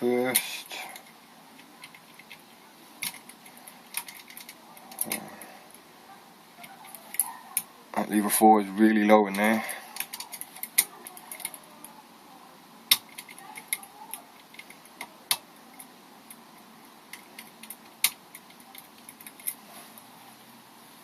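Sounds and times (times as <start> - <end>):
lock picking metal clicks: 3.0 - 5.2, 9.4 - 11.6, 12.9 - 19.6.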